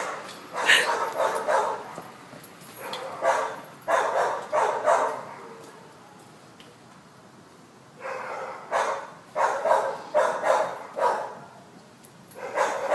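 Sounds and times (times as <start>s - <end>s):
dog barking: 0.0s - 2.0s, 2.8s - 5.6s, 8.0s - 11.6s, 12.4s - 12.9s.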